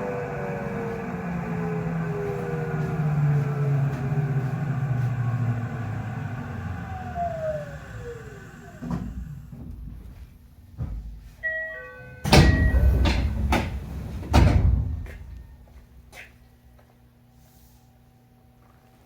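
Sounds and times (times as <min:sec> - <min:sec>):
train traction motor whine: 0:00.0 - 0:10.0
train doors sliding open: 0:00.2 - 0:10.0, 0:12.2 - 0:15.5.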